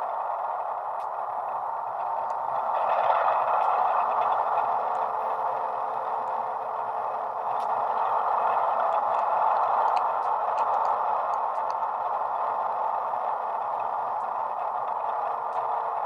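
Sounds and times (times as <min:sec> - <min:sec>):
diesel engine drone from small speaker: 0:00.0 - 0:16.0
faint light ticks: 0:01.0 - 0:01.2, 0:07.5 - 0:12.8.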